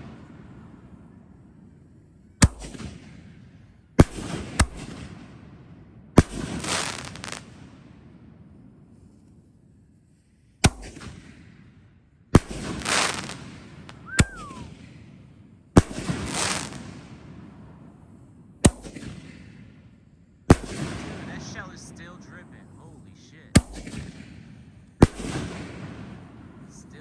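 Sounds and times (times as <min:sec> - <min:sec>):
firework shells booming: 0:02.4 - 0:08.4, 0:12.3 - 0:27.0
firework crackling hiss: 0:06.3 - 0:07.5, 0:12.4 - 0:14.8, 0:15.8 - 0:17.1
falling firework whistle: 0:12.8 - 0:15.0.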